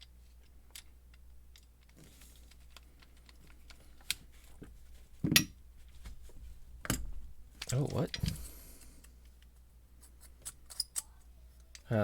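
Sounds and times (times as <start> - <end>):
screwdriver clicks and scrapes on metal: 10.0 - 11.9.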